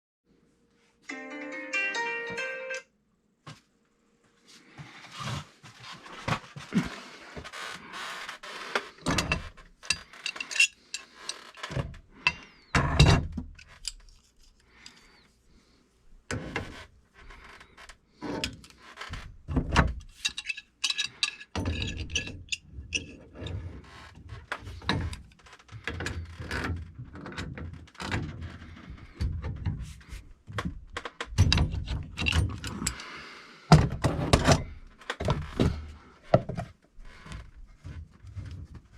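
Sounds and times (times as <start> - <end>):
metal tools knocking and clanking: 9.0 - 14.0, 19.6 - 23.5.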